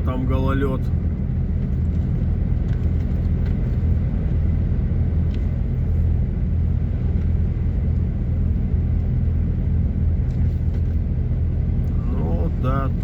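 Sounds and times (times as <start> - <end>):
truck engine and road rumble: 0.0 - 13.0.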